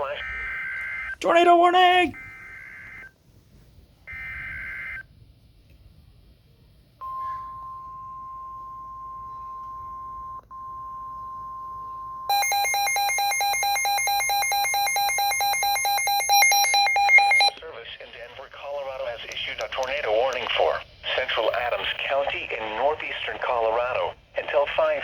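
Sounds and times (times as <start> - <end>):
steady alarm tone: 12.3 - 17.6.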